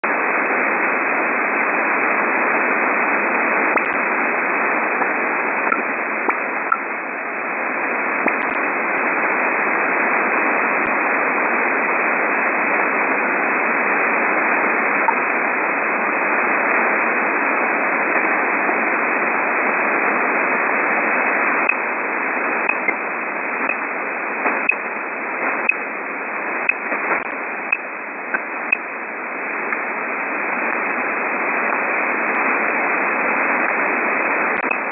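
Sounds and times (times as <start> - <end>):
radio band noise hiss: 0.0 - 34.9
short radio pips: 1.4 - 11.9, 20.6 - 34.9.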